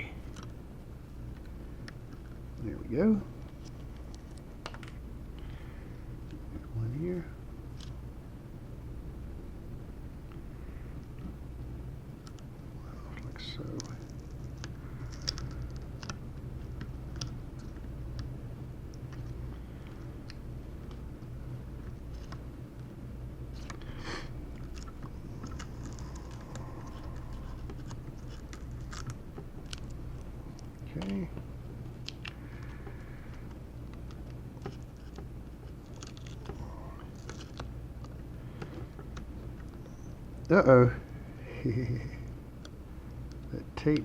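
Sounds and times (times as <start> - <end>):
steady low hum: 0.0 - 44.0
tape peeling crackles: 13.3 - 18.3, 23.5 - 40.1.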